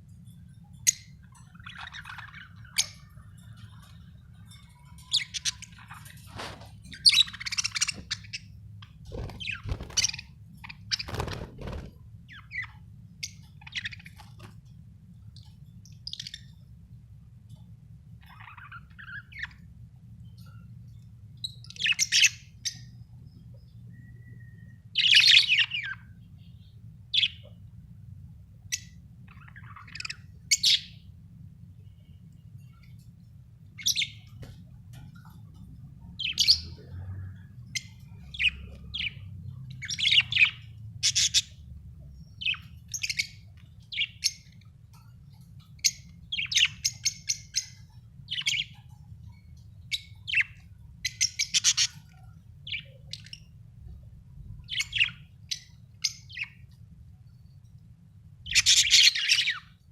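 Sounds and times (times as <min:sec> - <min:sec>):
budgerigar chirping: 0:39.8 - 0:41.6, 0:49.9 - 0:52.1, 0:58.4 - 0:59.7.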